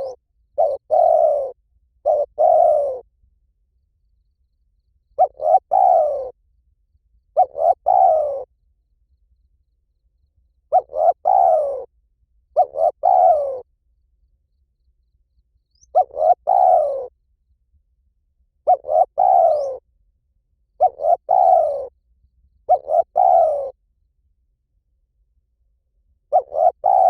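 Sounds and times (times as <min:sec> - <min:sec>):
dove cooing: 0:00.0 - 0:03.1, 0:05.2 - 0:06.4, 0:07.3 - 0:08.6, 0:10.7 - 0:13.7, 0:15.7 - 0:17.2, 0:18.6 - 0:19.8, 0:20.8 - 0:22.0, 0:22.6 - 0:23.8, 0:26.3 - 0:27.0.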